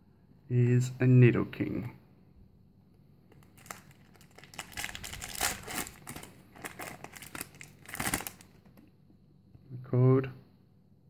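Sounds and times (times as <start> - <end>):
foil wrapper crinkling and tearing: 3.3 - 8.8.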